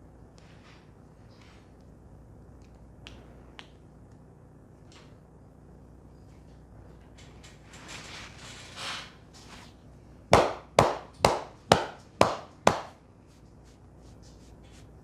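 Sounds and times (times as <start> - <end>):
hand slaps: 10.4 - 13.0
hands rubbing hair: 12.2 - 15.0.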